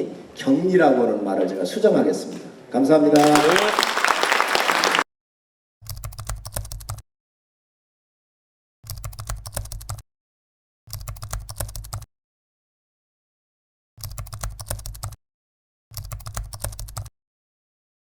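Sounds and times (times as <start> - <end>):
audience clapping: 3.2 - 5.1.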